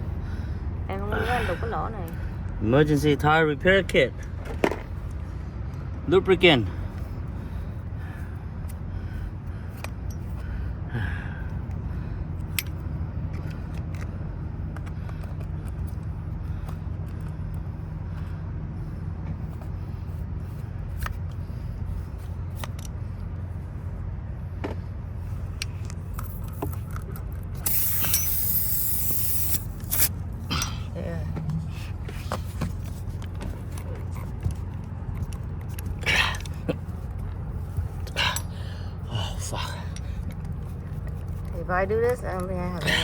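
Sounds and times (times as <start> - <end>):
steady low hum: 0.0 - 43.0
loud hiss: 27.7 - 30.1
small clicks and scrapes: 32.1 - 38.2.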